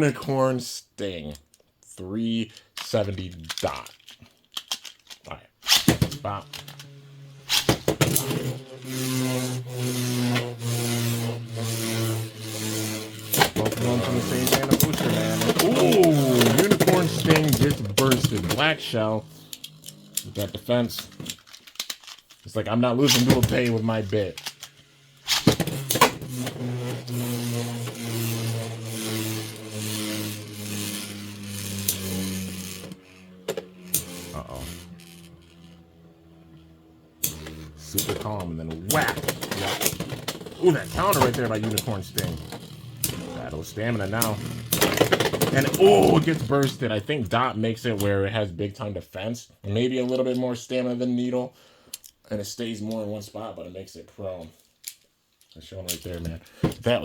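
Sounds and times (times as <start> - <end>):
spinning tops clacking: 5.6 - 22.2, 23.0 - 46.8
whirring hum with grinding scrape: 5.6 - 48.2.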